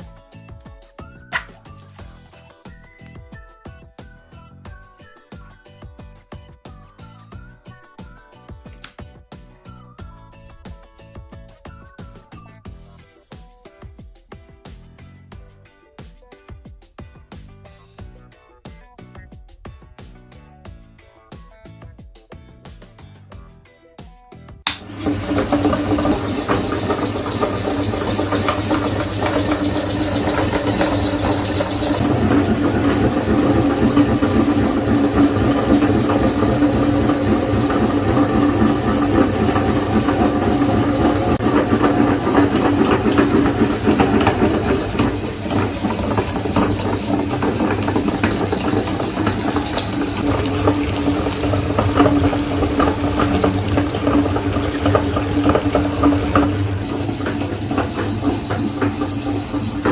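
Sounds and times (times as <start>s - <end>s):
electric meat grinder running: 24.7s - 59.9s.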